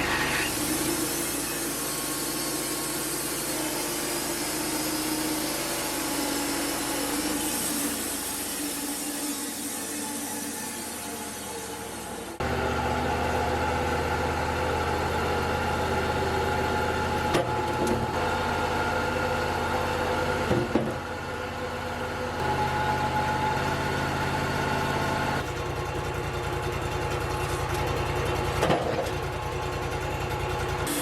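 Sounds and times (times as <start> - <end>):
sawmill engine idling: 0.0 - 31.0.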